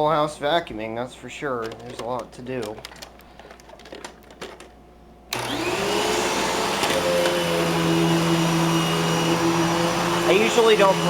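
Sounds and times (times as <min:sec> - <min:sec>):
vacuum cleaner motor whining: 0:05.3 - 0:11.0.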